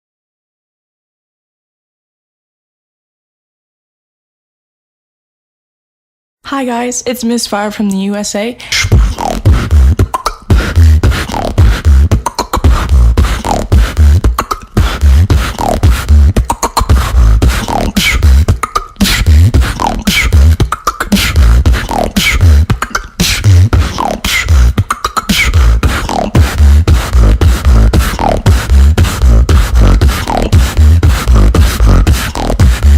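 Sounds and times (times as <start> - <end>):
beatboxing: 8.6 - 32.9.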